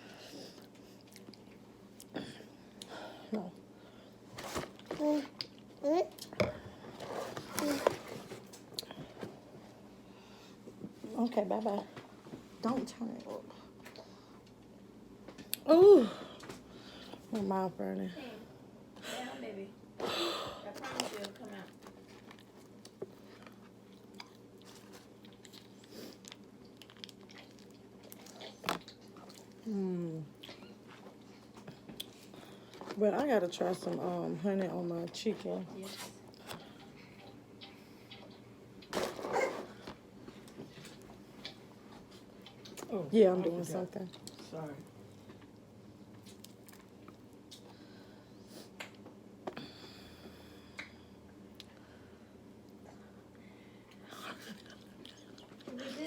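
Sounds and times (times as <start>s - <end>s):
low steady hum: 0.0s - 56.0s
chewing fried chicken: 21.0s - 29.6s, 44.1s - 47.8s, 53.9s - 56.0s.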